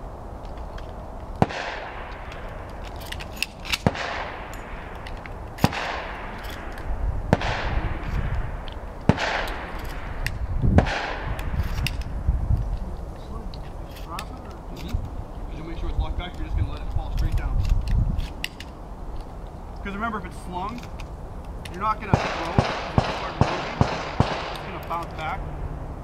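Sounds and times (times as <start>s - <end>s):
fainter gunshot cracks: 1.4s - 2.4s, 5.6s - 6.7s, 7.3s - 8.5s, 9.1s - 10.2s, 10.8s - 11.6s, 22.1s - 24.8s
shotgun shots echoing: 1.4s - 2.8s, 3.6s - 5.0s, 5.6s - 11.9s, 22.0s - 25.4s.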